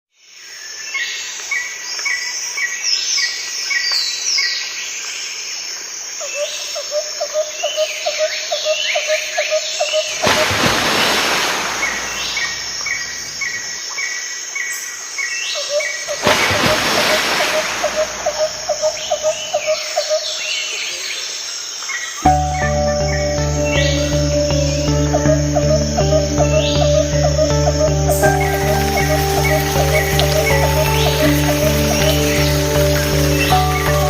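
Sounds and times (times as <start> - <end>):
birds chirping: 9.8 - 13.8, 15.6 - 21.3, 22.0 - 34.0.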